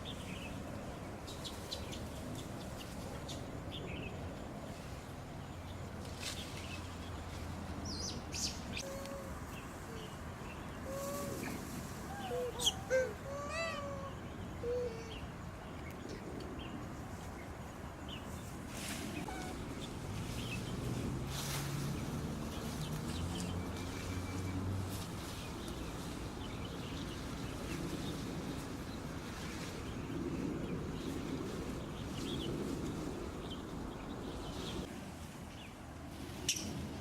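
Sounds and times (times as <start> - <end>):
outdoor background hiss: 0.0 - 37.0.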